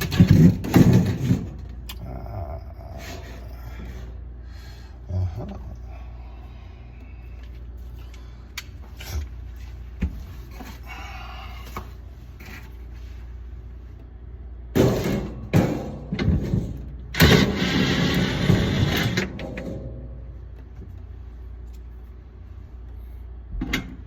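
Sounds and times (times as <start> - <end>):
parts clattering and scraping: 0.0 - 1.8
steady low hum: 0.0 - 24.0.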